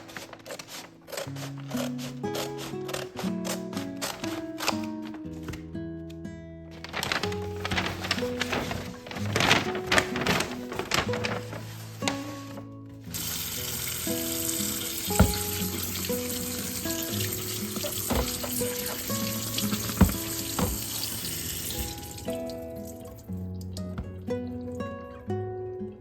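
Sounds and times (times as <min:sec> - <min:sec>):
tap water running into sink: 0:13.1 - 0:23.3
items knocking in sink: 0:14.7 - 0:22.2.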